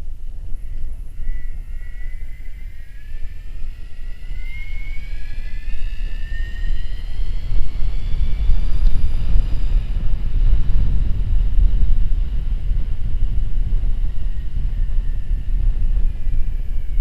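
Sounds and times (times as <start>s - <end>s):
wind buffeting microphone: 0.0s - 17.0s
electric bike motor whining: 0.7s - 11.6s.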